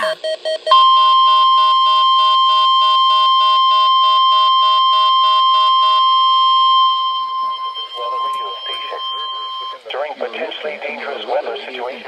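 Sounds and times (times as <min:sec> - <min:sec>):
quiet pulsing beep: 0:00.0 - 0:09.9
steady warning alarm tone: 0:00.2 - 0:09.9.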